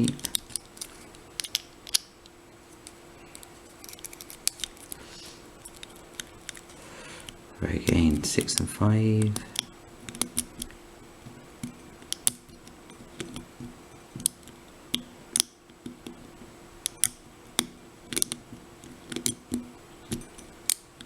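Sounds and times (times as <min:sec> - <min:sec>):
lock pick clicking in padlock: 0:16.9 - 0:17.2.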